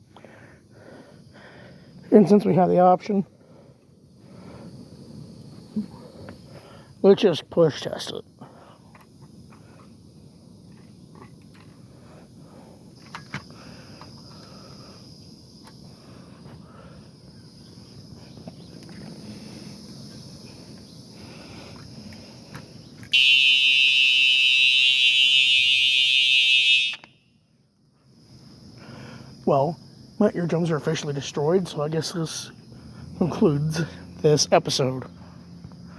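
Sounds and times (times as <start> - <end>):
fire alarm horn: 23.1 - 27.4.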